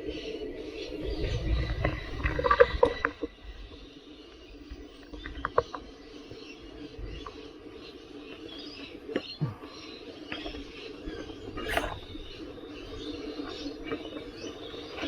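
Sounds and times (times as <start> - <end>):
short squeaks: 11.5 - 12.4.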